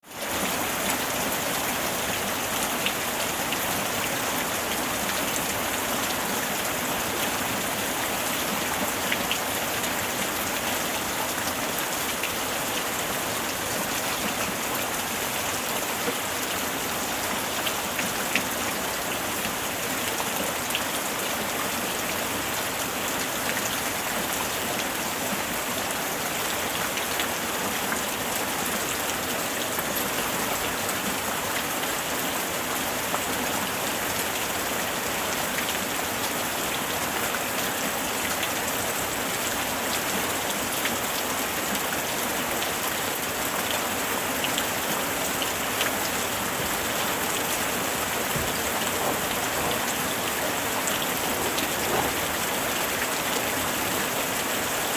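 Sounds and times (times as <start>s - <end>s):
rain hissing: 44.0s - 54.9s.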